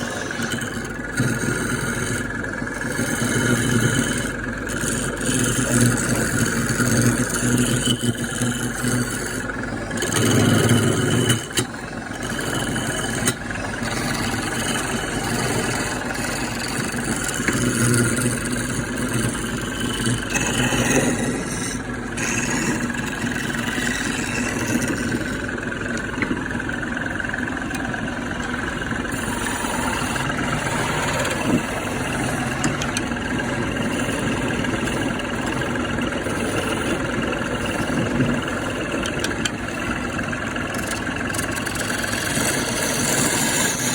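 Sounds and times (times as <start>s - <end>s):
woodworking power tool running: 0.0s - 43.9s.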